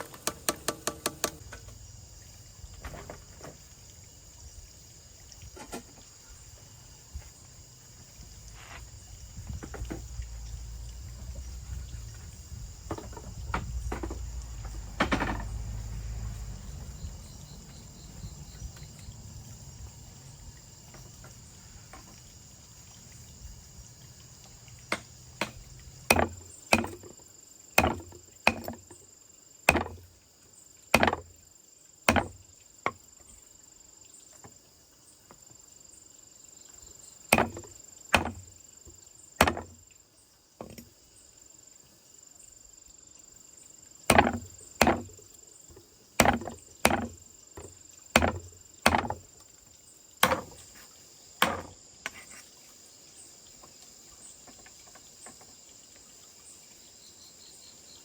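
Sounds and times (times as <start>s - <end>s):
blade chopping wood: 0.0s - 1.4s, 24.9s - 27.2s, 27.8s - 28.9s, 29.7s - 30.1s, 30.9s - 31.3s, 32.1s - 33.0s, 37.3s - 38.5s, 39.4s - 39.8s, 44.1s - 45.2s, 46.2s - 49.3s, 50.2s - 50.8s, 51.4s - 52.2s
insects humming: 0.0s - 58.0s
heavy thump: 51.4s - 51.8s.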